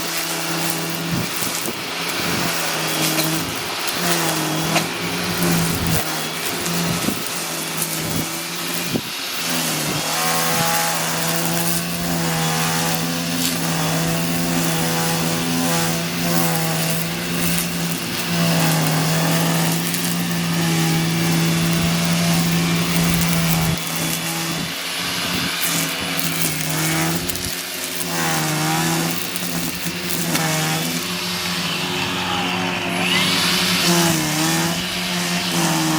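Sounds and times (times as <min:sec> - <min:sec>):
string trimmer motor whining: 0:00.0 - 0:35.9.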